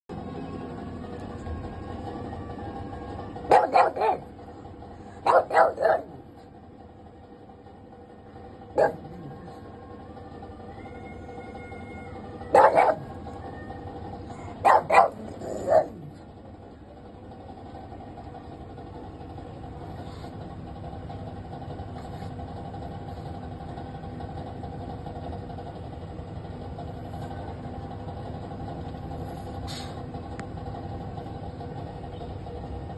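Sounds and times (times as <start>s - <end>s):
steady low hum: 0.1s - 32.9s
dog barking: 3.5s - 4.4s, 5.2s - 6.3s, 8.7s - 9.4s, 12.5s - 13.1s, 14.4s - 16.2s.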